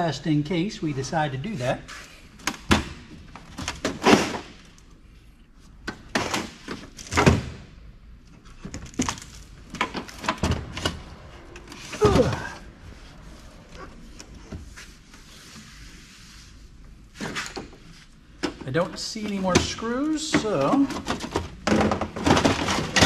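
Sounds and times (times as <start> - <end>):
computer case being taken apart: 19.3 - 23.0.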